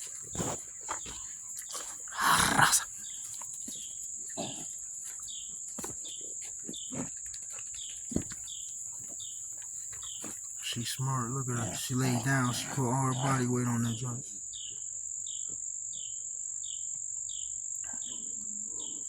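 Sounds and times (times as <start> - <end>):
puppy growling: 4.4 - 4.7.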